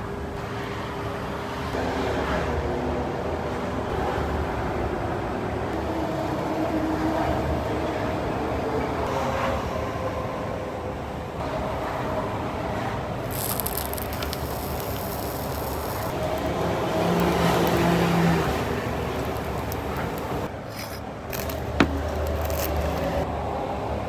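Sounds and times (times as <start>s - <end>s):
passing vehicles hum: 5.7s - 24.0s
cooking gear clicks and scrapes: 13.2s - 23.3s.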